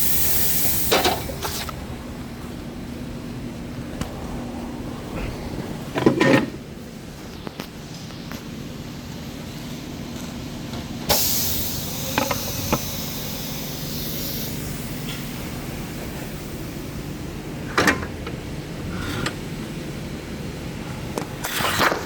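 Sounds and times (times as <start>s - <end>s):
air hissing out: 0.0s - 1.7s, 11.1s - 17.0s.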